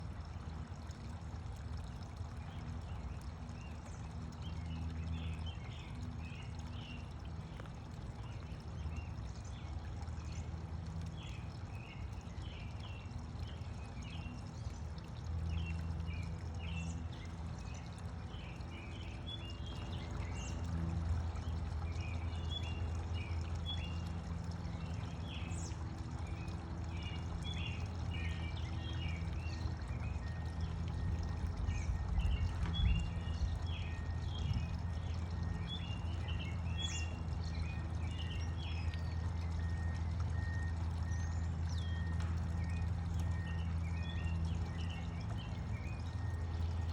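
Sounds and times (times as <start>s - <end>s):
faint hum: 0.0s - 46.9s
birds chirping: 1.1s - 46.9s
steady low rumble: 14.6s - 46.9s.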